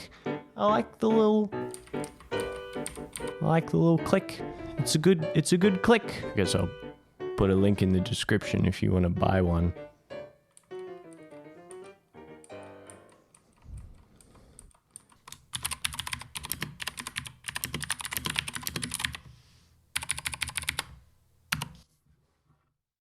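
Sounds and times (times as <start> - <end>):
faint background music: 0.0 - 13.2
mechanical keyboard typing clicks: 1.7 - 3.4, 14.3 - 19.2, 20.0 - 21.8.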